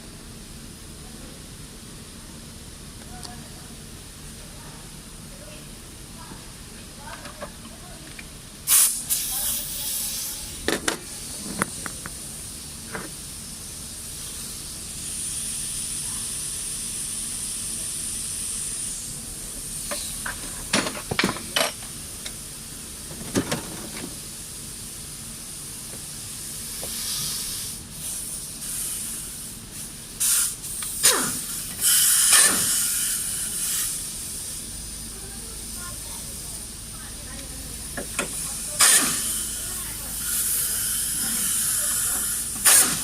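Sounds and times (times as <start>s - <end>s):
steady hiss: 24.1s - 43.0s.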